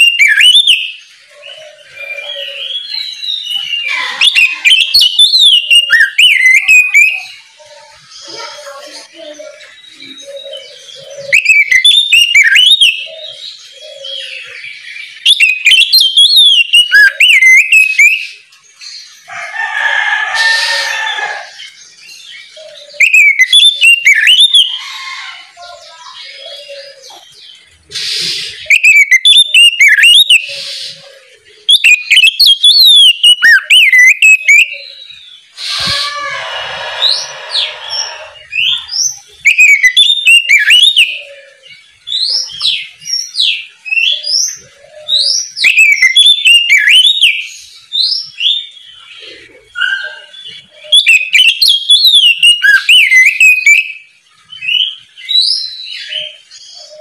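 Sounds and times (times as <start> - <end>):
bird singing whistled phrases: 0.0 - 7.6, 9.0 - 18.4, 22.5 - 24.8, 28.0 - 31.1, 31.7 - 48.7, 49.8 - 57.0
harsh rasping bird call: 19.3 - 21.7, 27.9 - 41.6.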